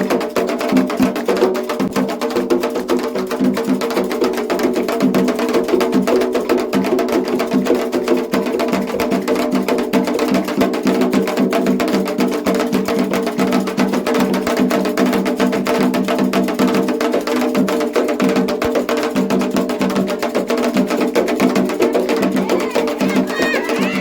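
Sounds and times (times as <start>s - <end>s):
hand drums: 0.0s - 24.0s
group singing: 21.8s - 24.0s.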